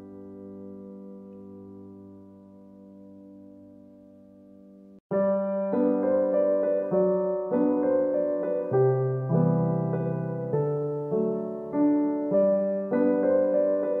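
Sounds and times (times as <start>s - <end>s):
gentle solo piano: 0.0s - 14.0s.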